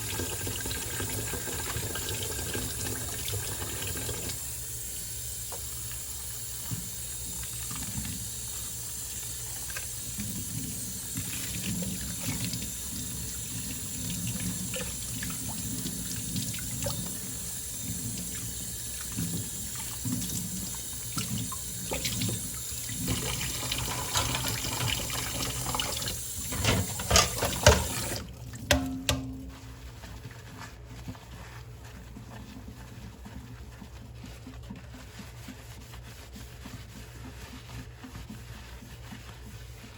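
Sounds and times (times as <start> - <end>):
tap running into sink: 19.0 - 29.6
dishes knocking: 26.5 - 28.1, 28.7 - 29.4
crockery clinking: 26.6 - 28.0.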